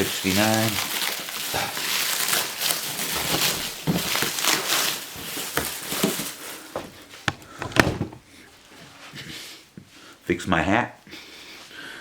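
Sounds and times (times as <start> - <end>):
rustling: 0.7 - 8.9
light knocks and clicks: 7.3 - 8.2.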